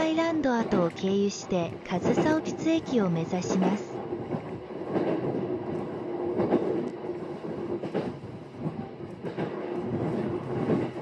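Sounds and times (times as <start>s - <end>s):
train running on rails: 0.0s - 11.0s
knocks of train on rails: 3.6s - 11.0s.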